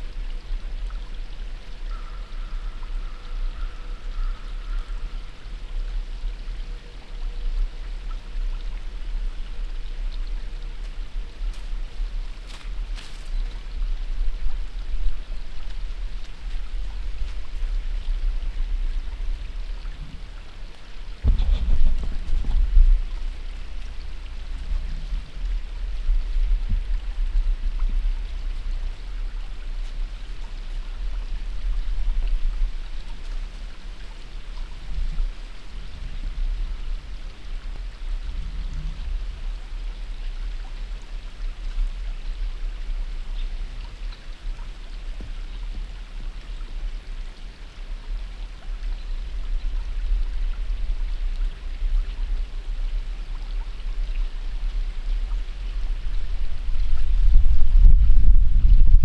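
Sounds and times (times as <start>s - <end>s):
constant low rumble: 0.0s - 59.0s
steady rain hiss: 0.0s - 59.0s.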